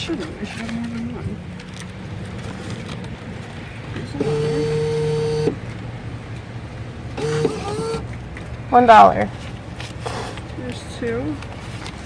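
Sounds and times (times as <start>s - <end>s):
vending machine motor whirring: 3.0s - 8.3s.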